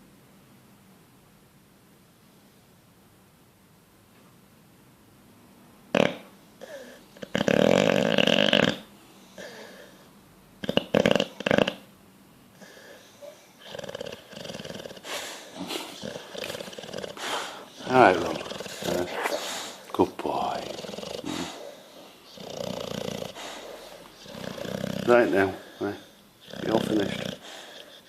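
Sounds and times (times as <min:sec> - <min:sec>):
dog snoring: 0:05.9 - 0:11.9, 0:12.6 - 0:28.0
raspy dog breathing: 0:06.6 - 0:10.1, 0:12.5 - 0:28.0.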